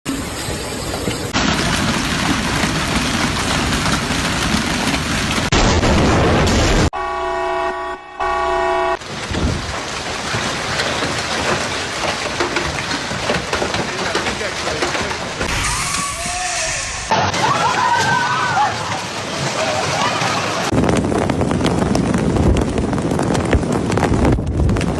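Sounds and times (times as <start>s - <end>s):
hail and rain pounding: 1.3s - 6.9s, 9.0s - 15.5s, 17.2s - 24.9s
vehicle horn: 6.9s - 9.0s.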